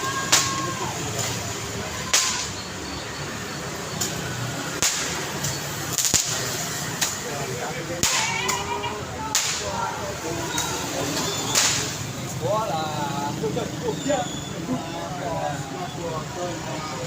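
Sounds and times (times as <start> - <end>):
people's voices: 0.0 - 17.0
street noise: 0.0 - 17.0
sharp cracks: 2.0 - 2.6, 4.0 - 7.3, 8.0 - 8.7, 9.3 - 9.8, 11.5 - 12.0.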